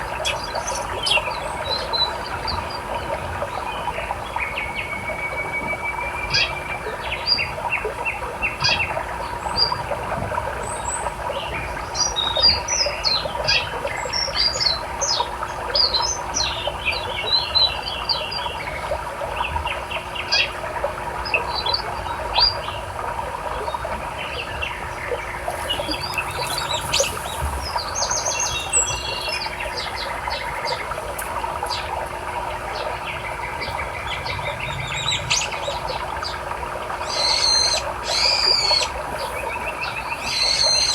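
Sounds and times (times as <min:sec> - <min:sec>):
river flowing: 0:23.2 - 0:40.9
small birds chirping and trilling: 0:23.7 - 0:40.9.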